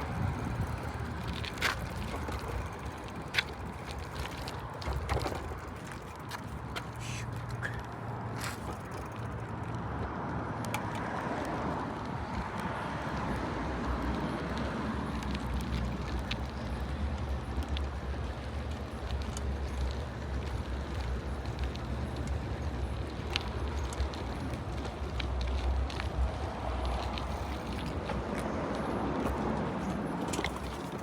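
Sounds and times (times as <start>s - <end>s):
bicycle tyre rumble: 0.0s - 31.0s
small clicks and rattles: 14.0s - 28.9s.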